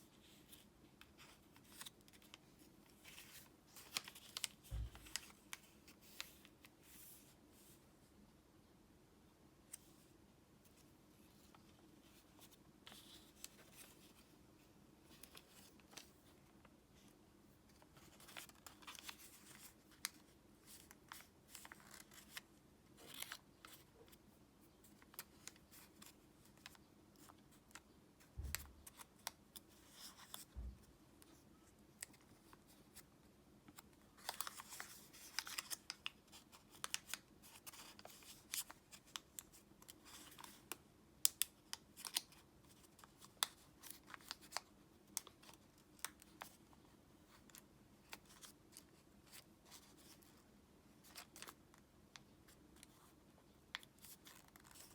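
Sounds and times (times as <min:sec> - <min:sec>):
paper rustling and creasing: 0:00.1 - 0:07.8, 0:17.6 - 0:24.2, 0:33.7 - 0:40.7, 0:53.7 - 0:54.9.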